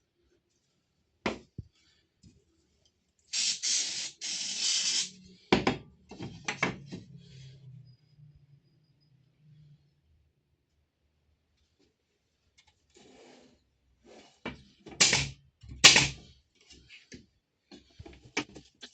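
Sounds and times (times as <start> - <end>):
spray hissing: 3.3 - 5.2.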